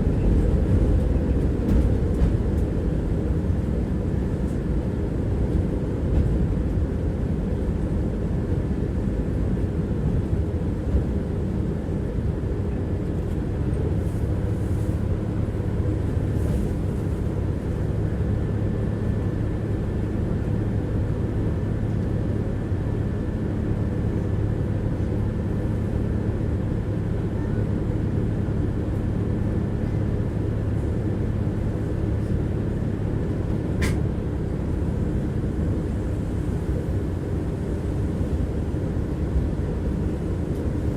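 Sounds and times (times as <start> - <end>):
tram wheels rumbling on rails: 0.0 - 7.6
steady low hum: 0.0 - 40.9.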